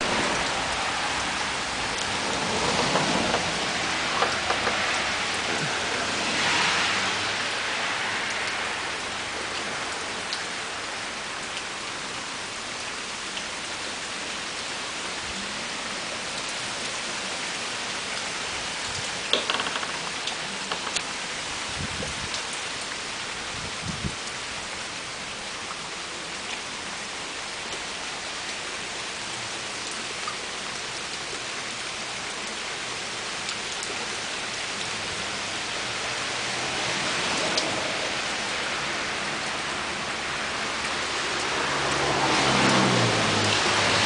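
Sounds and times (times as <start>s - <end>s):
vehicle engine hum: 0.0s - 10.0s.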